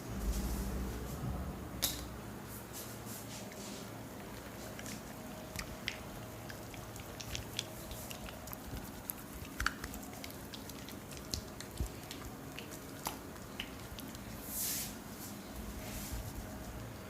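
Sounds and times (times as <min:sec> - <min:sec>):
faint steady hum: 0:00.0 - 0:17.0
wet clicks and squelches of massage: 0:04.2 - 0:14.5.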